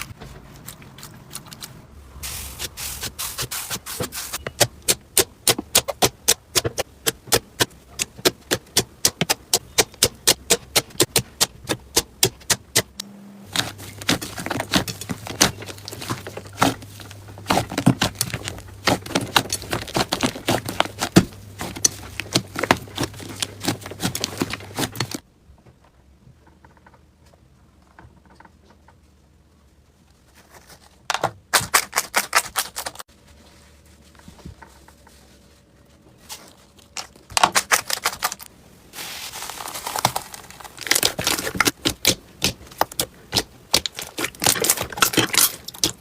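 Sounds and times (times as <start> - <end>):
slime crackling: 0.5 - 25.2, 36.9 - 46.0.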